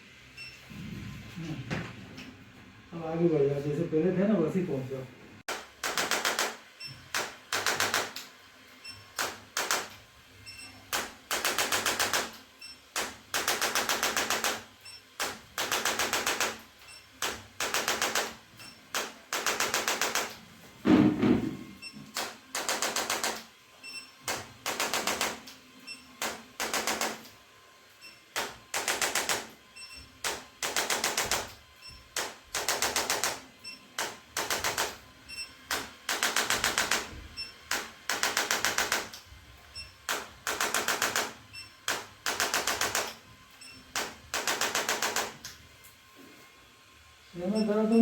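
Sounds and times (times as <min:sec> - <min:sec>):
rapid mechanical taps: 0:35.7 - 0:37.1, 0:37.7 - 0:39.2.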